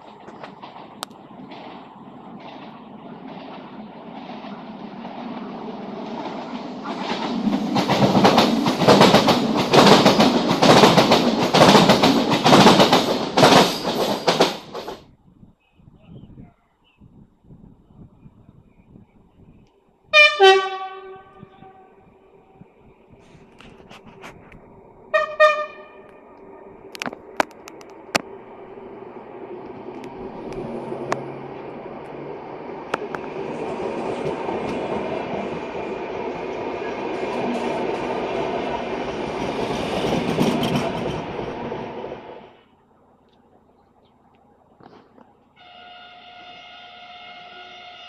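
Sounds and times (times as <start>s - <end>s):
train wheels clattering over rail joints: 0.0s - 15.0s, 39.0s - 41.6s
rumble of approaching train: 0.0s - 16.5s, 17.1s - 48.0s
train horn toots: 20.1s - 22.2s, 25.1s - 26.3s, 45.6s - 48.0s.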